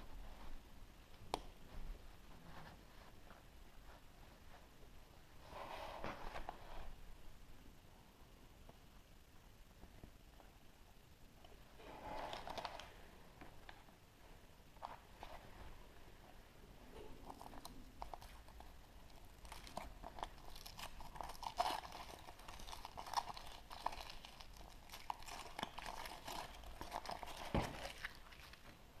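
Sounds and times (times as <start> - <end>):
foil wrapper crinkling and tearing: 18.0 - 28.7.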